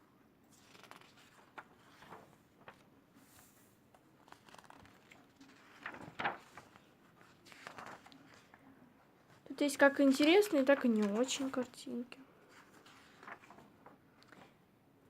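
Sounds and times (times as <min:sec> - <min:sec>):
paper pages rustling and turning: 0:00.5 - 0:08.6, 0:09.2 - 0:11.8, 0:12.5 - 0:14.6.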